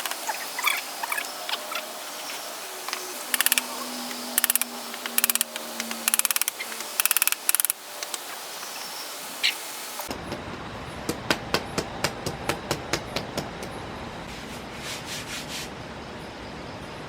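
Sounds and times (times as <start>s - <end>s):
rapid ratcheting clicks: 3.0s - 8.2s.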